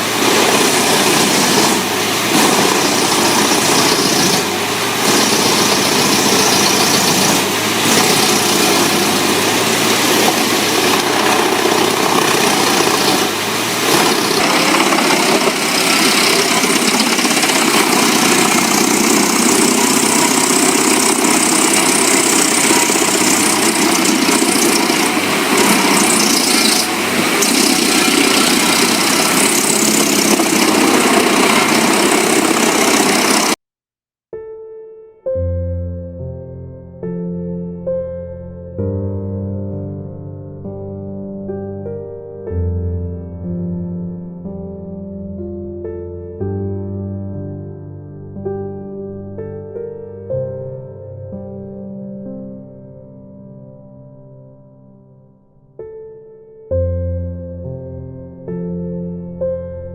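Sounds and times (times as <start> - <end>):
wood chipper shredding: 0.0 - 33.6.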